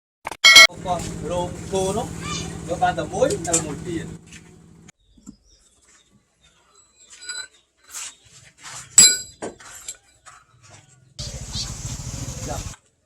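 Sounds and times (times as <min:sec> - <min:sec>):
metal clinking on metal: 0:07.1 - 0:07.5, 0:09.0 - 0:10.1.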